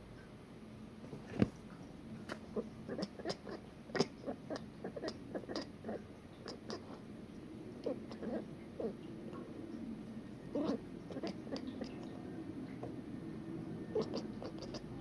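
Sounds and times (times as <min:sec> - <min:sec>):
cat chirping: 0:02.3 - 0:06.9, 0:07.8 - 0:09.0, 0:10.4 - 0:13.0, 0:13.8 - 0:15.0.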